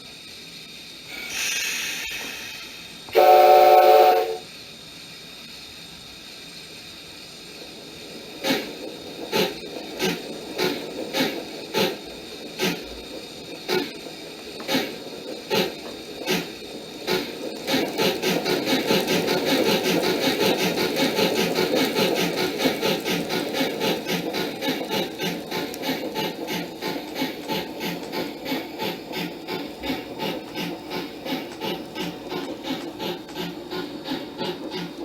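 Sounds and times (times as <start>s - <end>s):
quiet steam hiss: 0.0s - 35.0s
steam locomotive exhaust chuffs: 0.0s - 35.0s
steam whistle blast: 1.3s - 4.5s.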